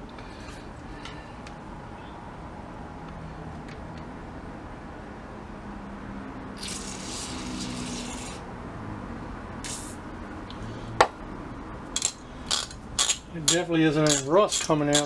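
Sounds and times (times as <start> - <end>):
aerosol can spraying: 6.6 - 8.4, 9.6 - 10.0.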